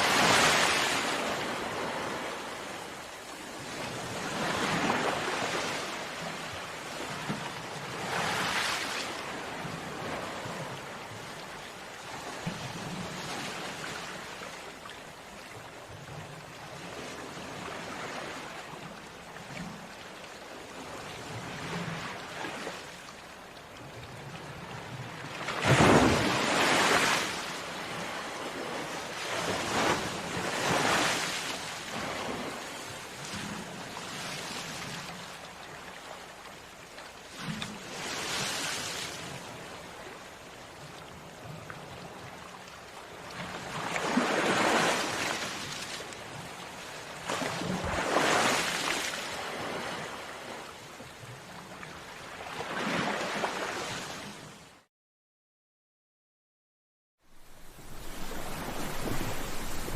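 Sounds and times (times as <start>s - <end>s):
ocean waves breaking: 0.0s - 11.2s, 24.6s - 35.3s, 37.3s - 40.2s, 43.4s - 50.7s, 57.3s - 59.9s.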